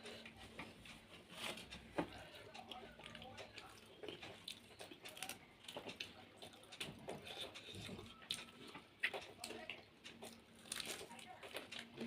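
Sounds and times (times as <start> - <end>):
chewing with wet mouth clicks: 2.1 - 12.0.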